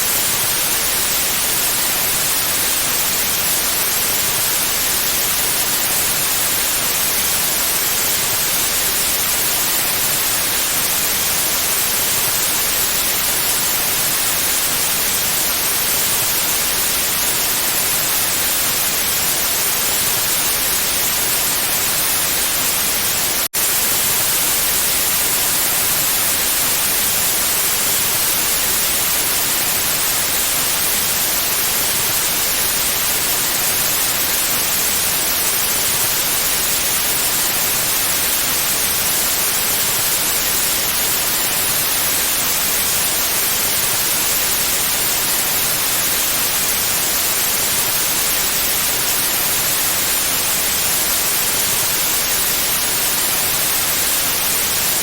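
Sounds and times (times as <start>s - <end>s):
white noise hiss: 0.0s - 55.0s.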